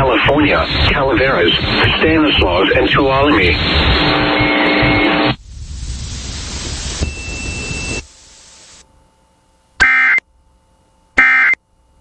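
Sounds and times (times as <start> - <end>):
radio hiss: 0.0 - 8.8
short data tone bursts: 6.6 - 8.8, 9.8 - 10.2.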